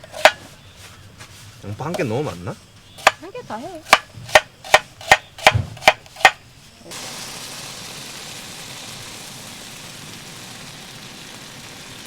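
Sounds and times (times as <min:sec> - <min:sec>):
onion sizzling in hot pan: 0:00.0 - 0:00.8, 0:03.0 - 0:12.0
knife chopping on cutting board: 0:03.9 - 0:06.4.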